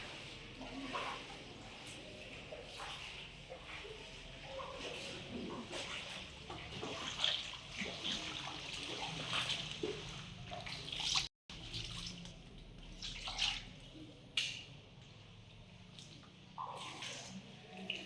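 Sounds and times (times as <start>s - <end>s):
floodwater splashing: 0.0s - 12.2s.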